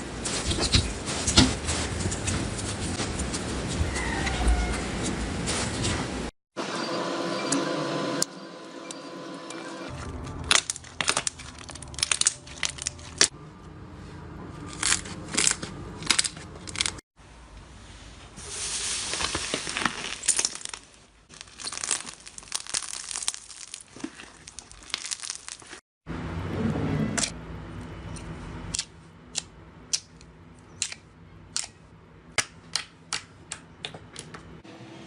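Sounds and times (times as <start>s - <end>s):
slime crackling and popping: 10.4s - 13.3s, 19.1s - 25.8s.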